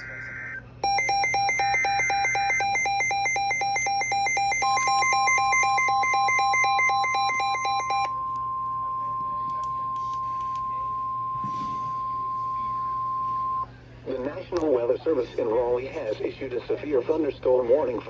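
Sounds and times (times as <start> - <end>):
two-pitch electronic alarm beeping: 0.8 - 8.4
steady warning alarm tone: 0.8 - 13.7.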